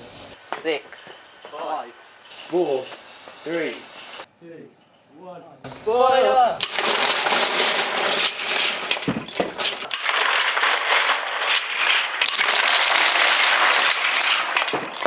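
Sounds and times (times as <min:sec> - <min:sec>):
wooden blocks clattering down: 0:06.6 - 0:15.0.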